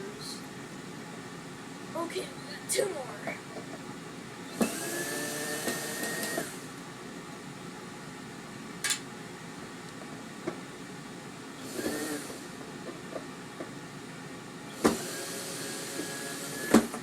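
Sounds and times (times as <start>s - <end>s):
power drill motor whining: 4.5s - 6.7s, 11.7s - 12.4s, 14.8s - 16.9s.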